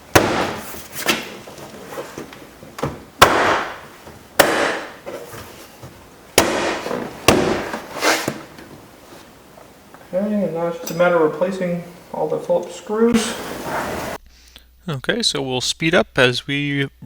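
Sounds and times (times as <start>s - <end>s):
hand smacking car door panel: 6.4s - 7.8s.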